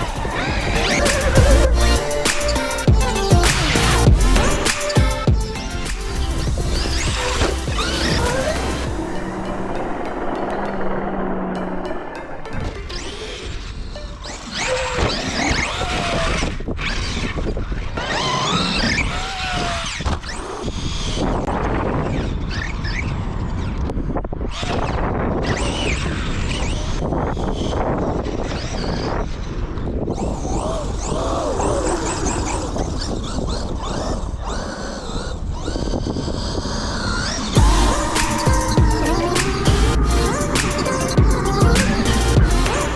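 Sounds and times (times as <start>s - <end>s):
music: 0.0s - 13.8s, 37.6s - 42.9s
rc truck motor whining: 32.1s - 42.9s
steady rumbling noise: 37.5s - 42.9s.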